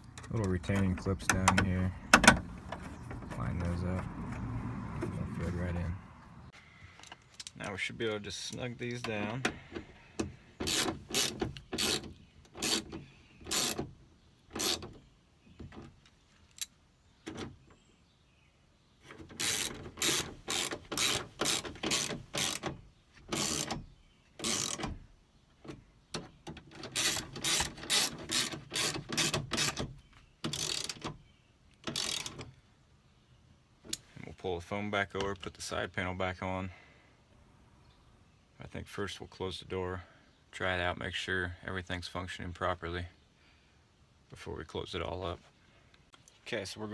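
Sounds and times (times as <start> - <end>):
hand ratchet clicking: 19.4 - 22.7, 23.3 - 23.8, 24.4 - 24.9, 26.8 - 29.8, 30.5 - 31.1, 31.8 - 32.4.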